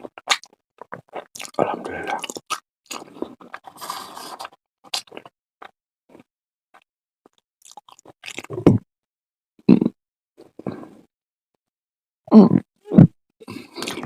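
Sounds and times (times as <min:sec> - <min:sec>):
mouth eating sounds: 0:00.1 - 0:05.3.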